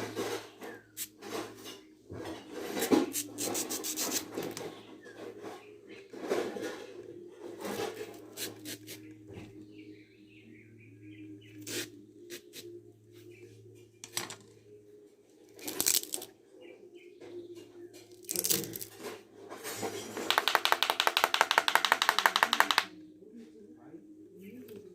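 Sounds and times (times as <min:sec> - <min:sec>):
banana leaf cracking and tearing: 0:15.6 - 0:16.3, 0:18.2 - 0:18.9.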